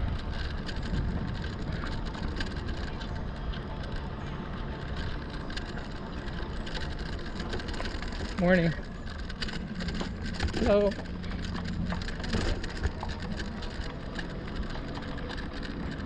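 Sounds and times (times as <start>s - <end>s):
bike clicks and rattles: 0.0s - 16.0s
bike tyres rumbling on trail: 0.0s - 16.0s.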